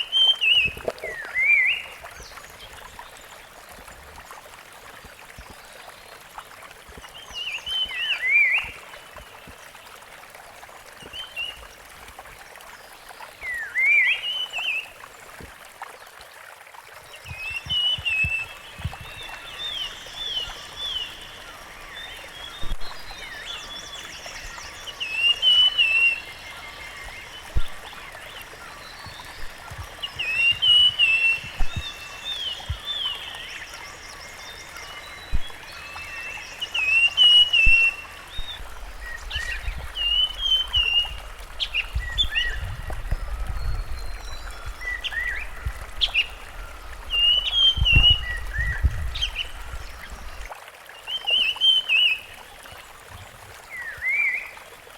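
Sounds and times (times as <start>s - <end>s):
bird singing warbling phrases: 34.4s - 50.4s.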